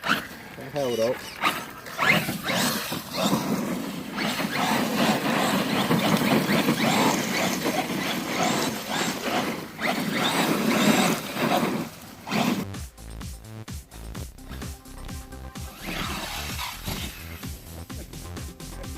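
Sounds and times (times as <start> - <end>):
rc truck motor whining: 0.0 - 12.7, 15.6 - 17.8.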